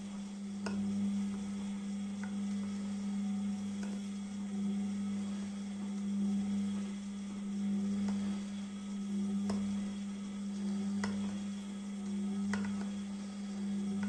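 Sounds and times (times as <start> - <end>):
washing machine motor hum: 0.0 - 14.0.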